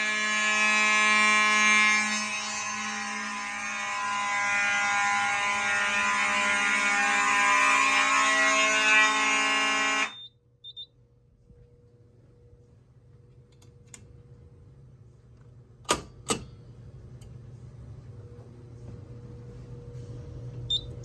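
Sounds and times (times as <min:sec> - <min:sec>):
fire alarm horn buzzing: 0:00.0 - 0:10.9
faint high beeps: 0:10.1 - 0:10.9, 0:20.7 - 0:21.0.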